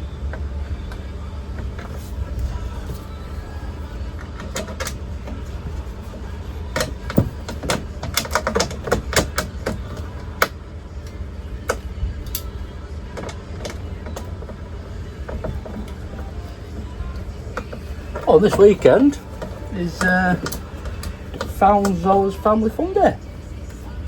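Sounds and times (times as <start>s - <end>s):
steady low hum: 0.0s - 24.0s
metal clicks of hand tools: 6.8s - 12.5s, 17.2s - 22.2s.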